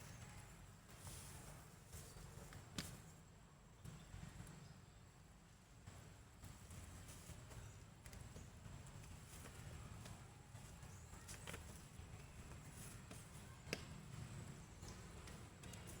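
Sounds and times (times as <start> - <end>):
small clicks and taps: 8.0 - 14.2.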